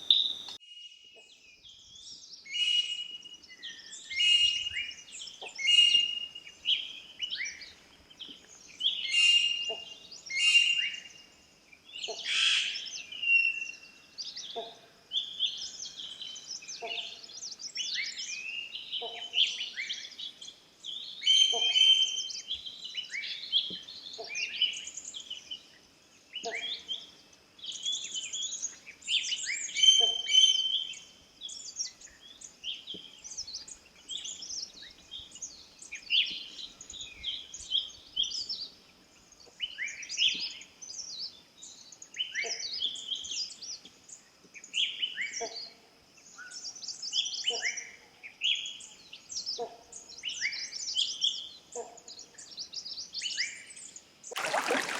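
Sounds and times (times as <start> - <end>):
forest birds chirping: 0.0 - 54.9.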